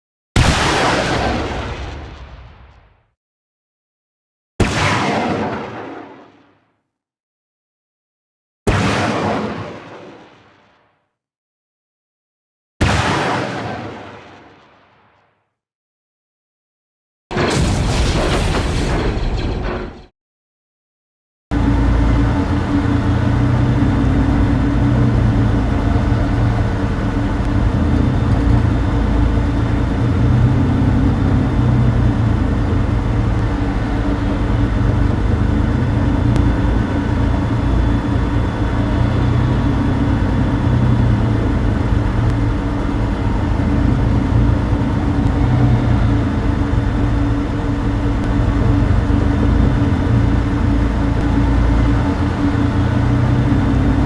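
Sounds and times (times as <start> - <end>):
deep engine hum and rumble: 21.5 - 54.0.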